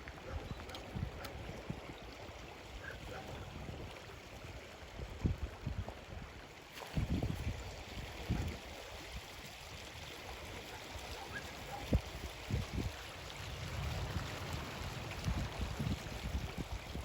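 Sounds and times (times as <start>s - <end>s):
water rushing: 6.4s - 17.0s.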